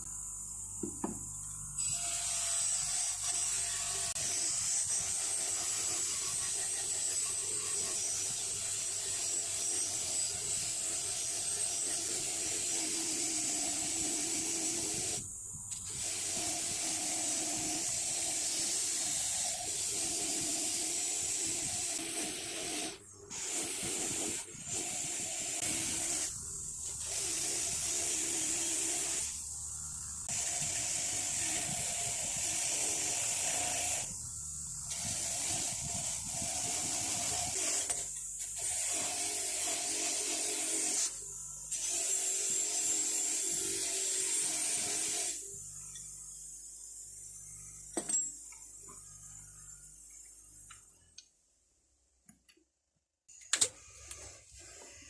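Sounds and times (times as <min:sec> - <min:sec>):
motor humming: 0:00.0 - 0:46.3
wire wheel scrubbing metal: 0:01.9 - 0:15.2.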